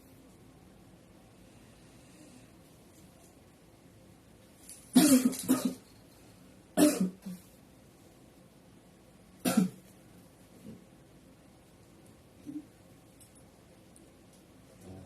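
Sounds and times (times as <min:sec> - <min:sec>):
person coughing hard: 0:05.0 - 0:05.8, 0:06.8 - 0:07.4, 0:09.4 - 0:09.8.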